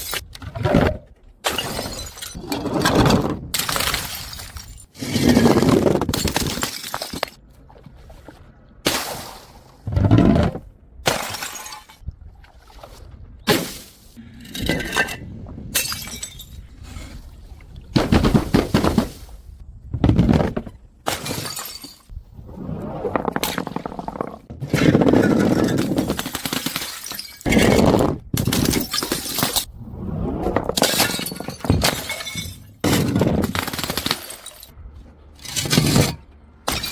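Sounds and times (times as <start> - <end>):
glass bottles smashing: 15.8 - 16.6, 21.1 - 22.1, 26.6 - 27.8, 30.8 - 34.7.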